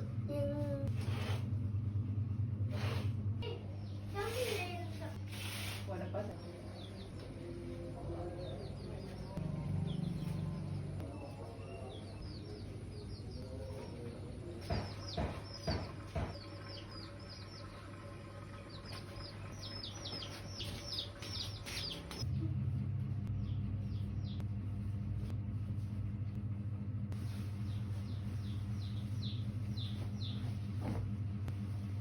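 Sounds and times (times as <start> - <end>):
small birds chirping: 6.2 - 22.3, 23.3 - 24.8, 27.3 - 31.0
sharp knocks: 14.6 - 16.8
low steady hum: 15.8 - 32.0.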